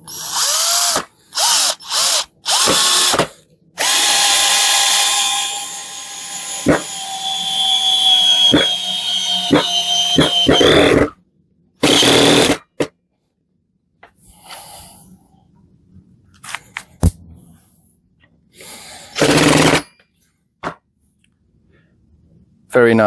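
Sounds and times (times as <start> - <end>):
cordless drill driving a screw: 0.0 - 11.1, 11.8 - 12.6, 19.2 - 19.8.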